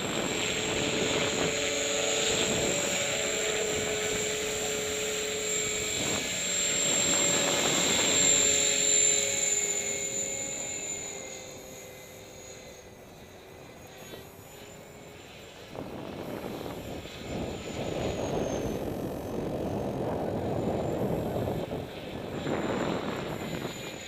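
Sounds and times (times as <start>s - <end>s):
rc helicopter motor whine: 0.0s - 24.0s
rotor blades droning: 0.0s - 24.0s.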